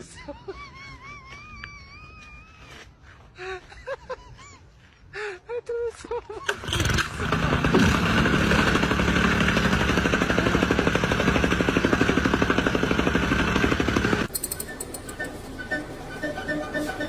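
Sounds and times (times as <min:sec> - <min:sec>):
machine engine pulsing: 0:06.5 - 0:15.3.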